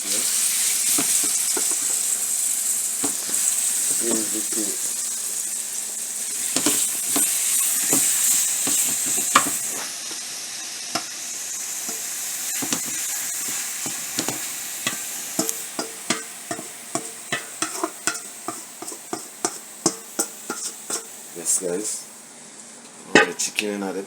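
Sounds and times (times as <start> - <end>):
chicken sizzling in curry: 0.0 - 22.4
spoon knocking and scraping pot: 0.9 - 2.1, 3.0 - 3.5, 6.4 - 9.9, 11.9 - 21.2.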